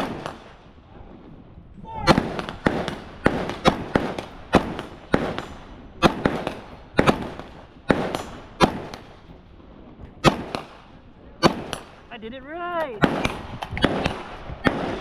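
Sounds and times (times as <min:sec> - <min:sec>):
gunshots with echo: 0:00.0 - 0:00.6, 0:02.0 - 0:09.3, 0:10.2 - 0:12.1, 0:12.8 - 0:15.0.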